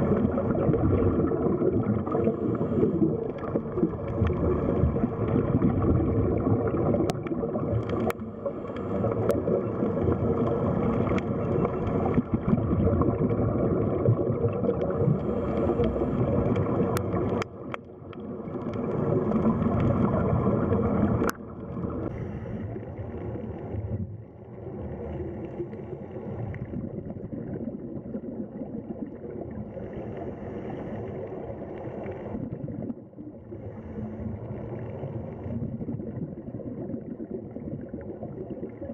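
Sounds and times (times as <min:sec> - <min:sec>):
underwater rumble of moving water: 0:00.0 - 0:38.9.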